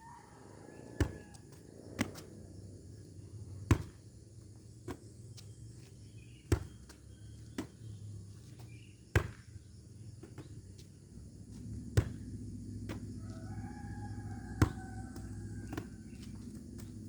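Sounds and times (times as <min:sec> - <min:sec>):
rooster crowing: 0:00.0 - 0:01.5, 0:13.0 - 0:16.8.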